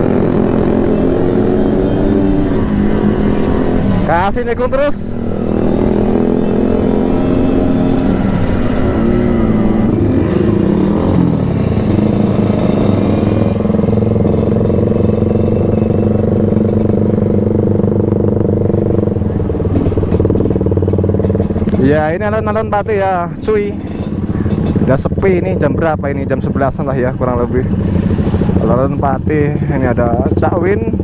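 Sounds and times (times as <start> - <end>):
two-stroke motorcycle engine: 0.0 - 31.0.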